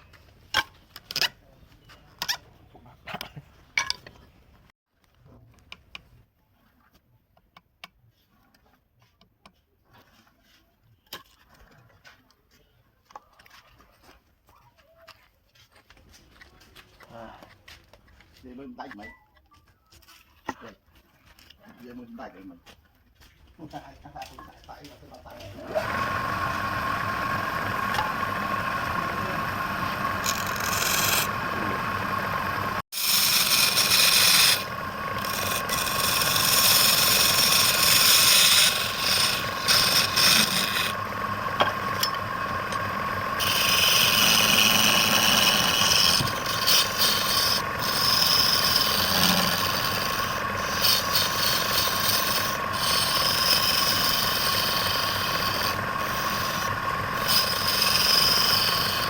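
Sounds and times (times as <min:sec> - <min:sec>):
tool scraping spinning wood: 0:25.2 - 0:59.0
wood lathe whining: 0:25.4 - 0:59.0.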